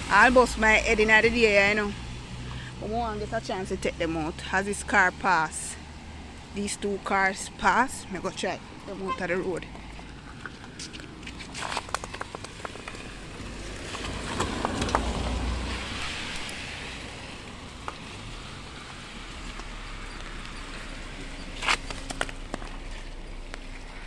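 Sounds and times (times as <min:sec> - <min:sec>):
car driving past: 0:12.7 - 0:24.0.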